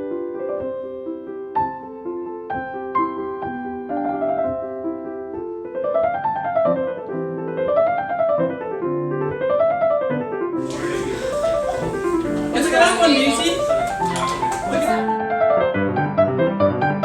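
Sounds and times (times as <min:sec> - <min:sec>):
piano music: 0:10.6 - 0:15.1.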